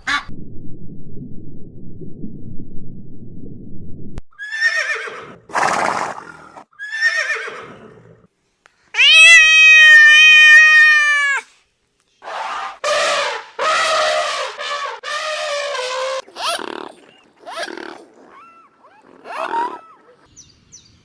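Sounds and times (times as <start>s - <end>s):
horse whinnying: 4.3s - 6.2s, 6.8s - 8.0s.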